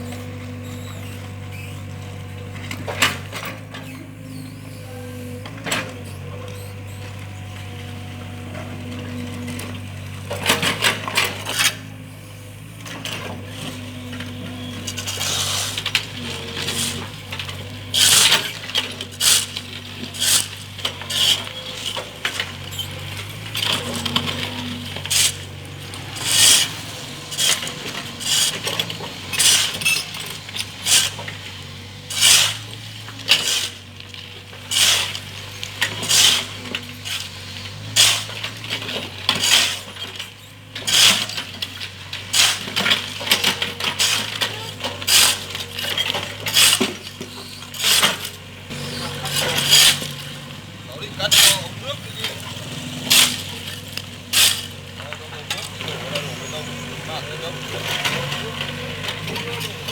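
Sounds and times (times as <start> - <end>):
excavator engine humming: 0.0 - 59.9
bucket metallic clinks and scrapes: 8.6 - 11.9, 12.8 - 59.9.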